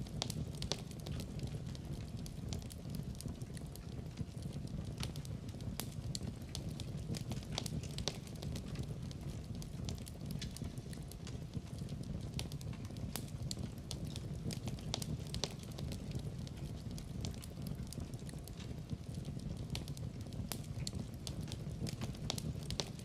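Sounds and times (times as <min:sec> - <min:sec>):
fire crackling and popping: 0:00.0 - 0:23.0
low rumble of flames: 0:00.0 - 0:23.0.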